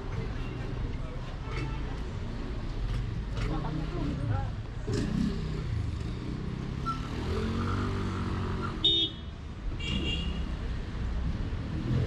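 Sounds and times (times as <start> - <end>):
street traffic: 0.0 - 12.0
car horn toot: 8.8 - 10.4.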